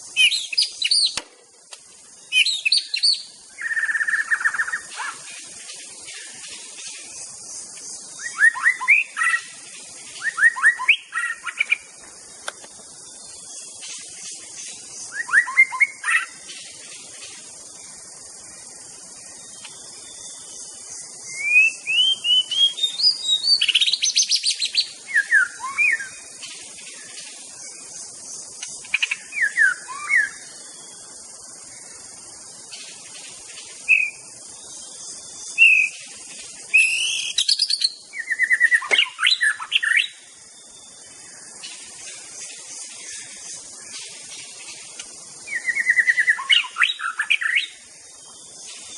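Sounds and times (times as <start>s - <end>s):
steady high hiss: 0.0s - 48.9s
bird singing whistled phrases: 2.3s - 5.2s, 8.2s - 9.5s, 10.2s - 11.8s, 15.1s - 16.4s, 21.2s - 26.2s, 29.0s - 30.4s, 33.9s - 34.2s, 35.6s - 36.0s, 36.7s - 40.2s, 45.5s - 47.8s.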